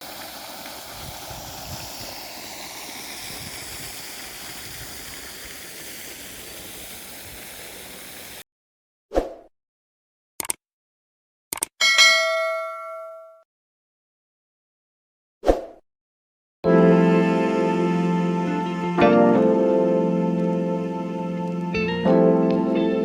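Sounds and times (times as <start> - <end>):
running water rushing: 0.0 - 8.4.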